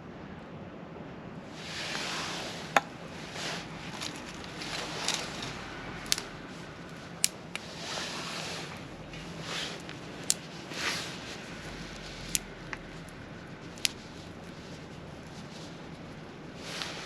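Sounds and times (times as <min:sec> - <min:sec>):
soft rushing hiss: 0:01.4 - 0:17.0
wood fire crackling: 0:01.5 - 0:17.0.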